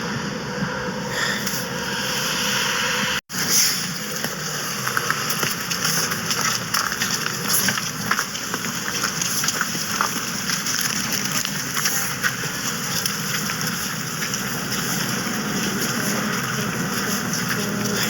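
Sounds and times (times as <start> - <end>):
precipitation ticking on surfaces: 4.2 - 18.0.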